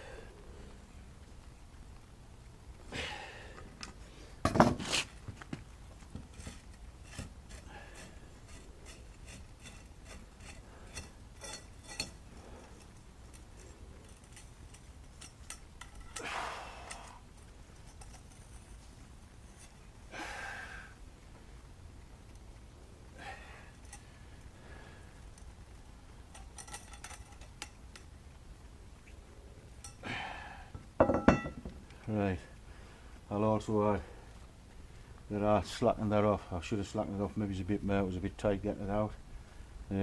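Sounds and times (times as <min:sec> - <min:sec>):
metal parts clinking: 0:10.4 - 0:16.2, 0:26.3 - 0:28.0.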